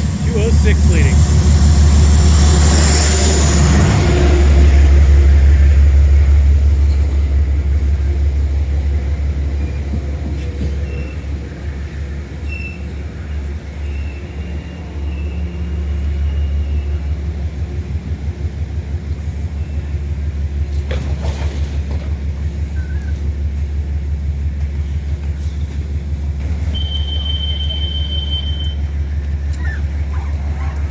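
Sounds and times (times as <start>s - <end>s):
diesel locomotive rumbling: 0.0s - 30.9s.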